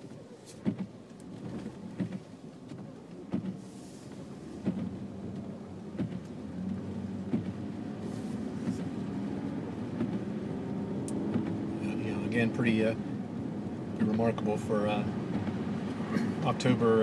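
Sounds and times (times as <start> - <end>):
car engine and tyres rumbling: 0.0 - 17.0
knocks and clicks: 0.6 - 3.6, 4.6 - 6.3, 7.3 - 7.6, 10.0 - 10.3.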